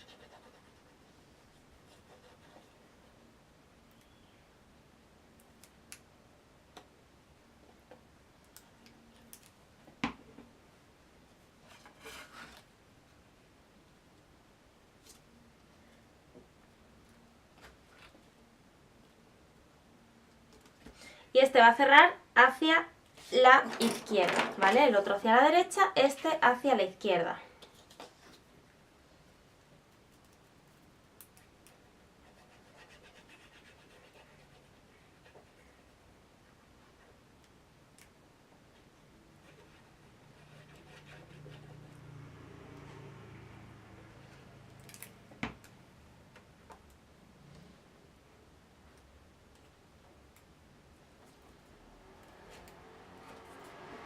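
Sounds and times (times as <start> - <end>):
soft paper rubbing: 11.6 - 12.7.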